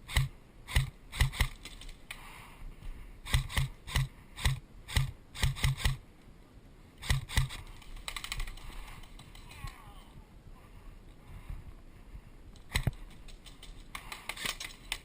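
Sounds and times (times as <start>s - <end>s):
sharp clicks with low thumps: 12.5s - 15.0s.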